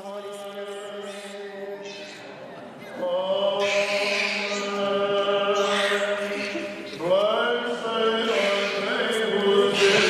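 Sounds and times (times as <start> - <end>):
voices chanting long notes: 3.0 - 10.0.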